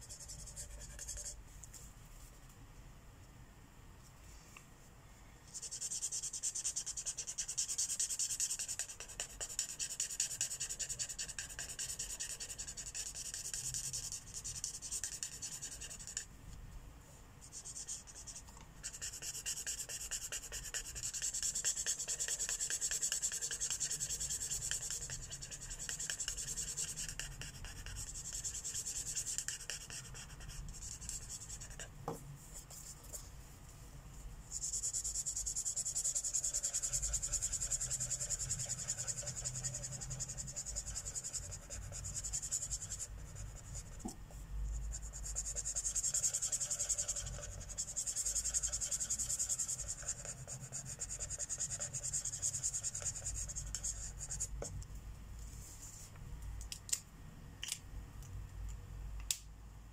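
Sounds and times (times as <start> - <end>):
marker scratching on paper: 0.0 - 1.4, 5.5 - 16.3, 17.4 - 33.3, 34.5 - 54.7.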